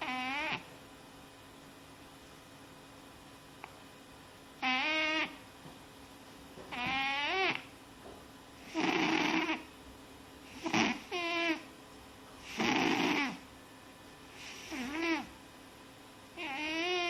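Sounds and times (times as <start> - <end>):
small animal snoring: 0.0 - 0.7, 4.6 - 5.4, 6.7 - 7.6, 8.6 - 9.7, 10.5 - 11.7, 12.4 - 13.5, 14.4 - 15.4, 16.4 - 17.0.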